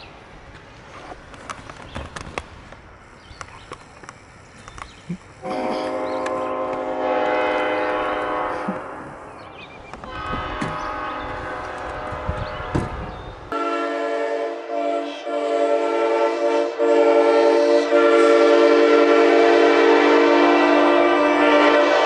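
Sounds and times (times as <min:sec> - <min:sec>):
train air horn chord: 0:05.4 - 0:09.2, 0:10.0 - 0:22.0.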